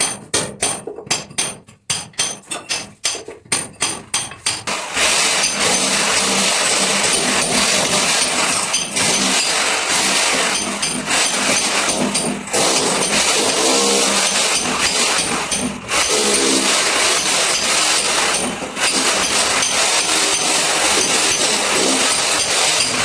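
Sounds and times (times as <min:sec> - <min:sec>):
power tool running: 0:04.6 - 0:23.0.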